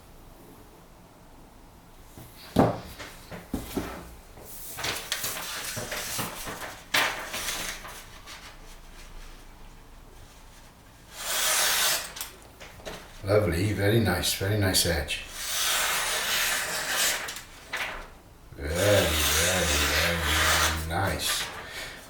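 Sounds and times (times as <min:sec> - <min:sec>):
knife cutting paper: 0:11.2 - 0:12.3, 0:15.4 - 0:18.0, 0:18.6 - 0:21.7.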